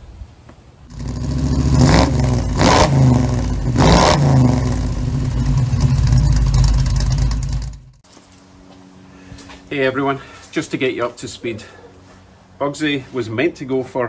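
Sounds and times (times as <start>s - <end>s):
engine revving: 0.9s - 8.0s.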